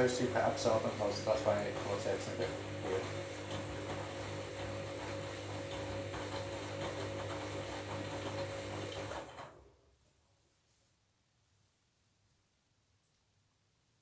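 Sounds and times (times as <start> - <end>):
washing machine drum turning: 0.0 - 9.4.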